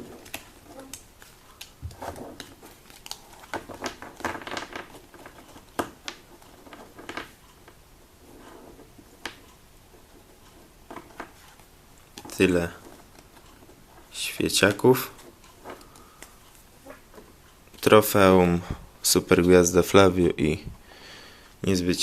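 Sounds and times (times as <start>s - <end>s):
cards handled on a table: 0.0s - 7.4s, 15.1s - 17.8s.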